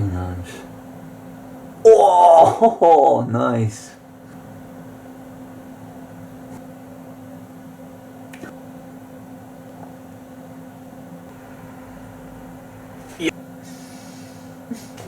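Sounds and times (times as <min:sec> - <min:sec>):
low electrical hum: 0:00.0 - 0:15.0
faint hiss: 0:11.3 - 0:15.0.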